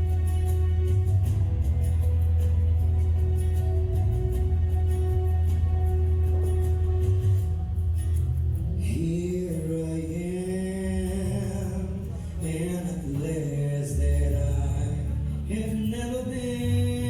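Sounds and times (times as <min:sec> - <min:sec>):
backing track with deep bass: 0:00.0 - 0:17.0
man singing slow melody: 0:08.7 - 0:17.0.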